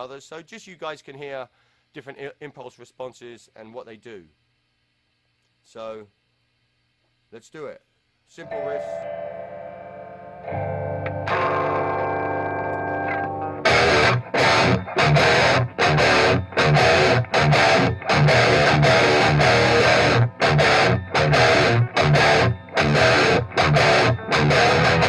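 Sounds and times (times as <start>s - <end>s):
distorted electric guitar riffs: 8.4s - 25.0s
ringing guitar chord: 8.4s - 25.0s.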